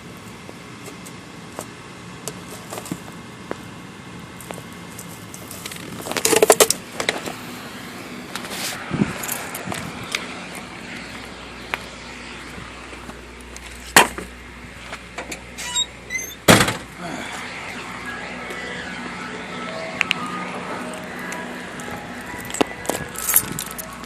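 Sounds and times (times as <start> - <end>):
high chirps: 15.8 - 24.0.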